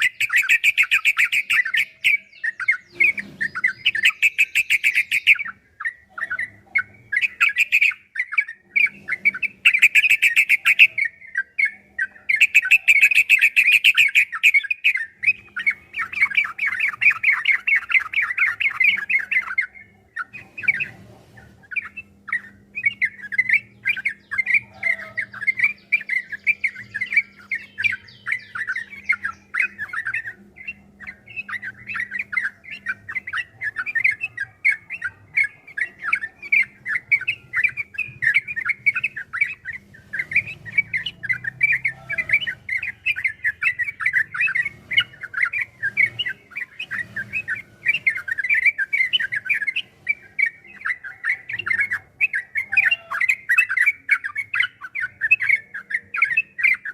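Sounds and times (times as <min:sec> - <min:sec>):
bulbul singing chattering notes: 0:00.0 - 0:21.0, 0:21.6 - 0:56.9.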